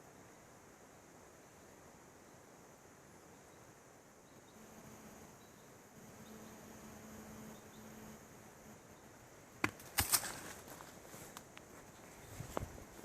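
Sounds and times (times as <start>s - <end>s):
footsteps on twigs: 9.6s - 13.0s.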